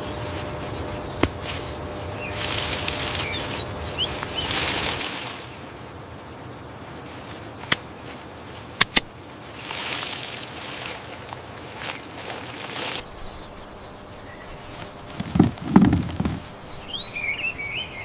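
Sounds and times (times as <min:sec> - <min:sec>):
sharp clicks: 0:08.8 - 0:09.1
faint bird chirps: 0:12.8 - 0:18.0.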